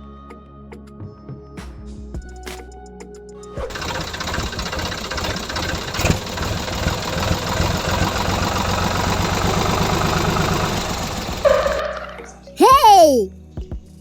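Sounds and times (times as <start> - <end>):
small tractor engine knocking: 3.7 - 11.8.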